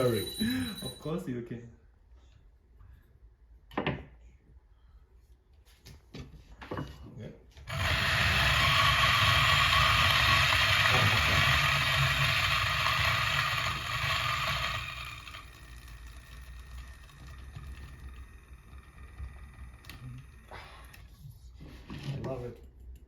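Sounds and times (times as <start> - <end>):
coffee grinder whirring: 7.7 - 21.2.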